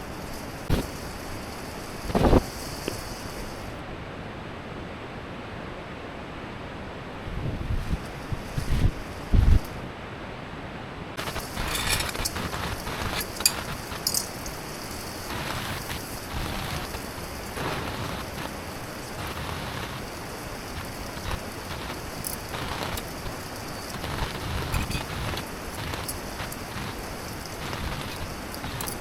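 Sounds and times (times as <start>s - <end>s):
rain drops pattering: 0.0s - 3.8s, 7.8s - 9.8s, 11.2s - 29.0s
wind thump on microphone: 2.1s - 3.0s, 7.4s - 9.8s.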